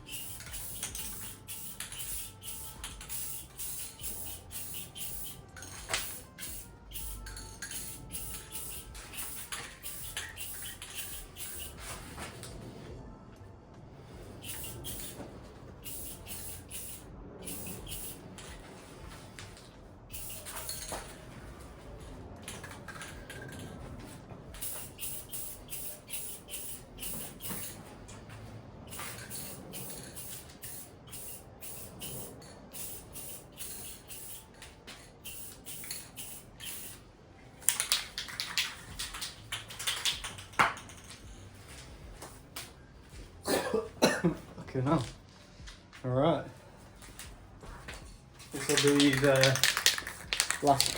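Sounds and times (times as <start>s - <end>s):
spray can hissing: 0.0s - 12.5s, 14.3s - 18.6s, 19.2s - 21.0s, 24.6s - 27.9s, 28.9s - 41.1s, 48.6s - 50.9s.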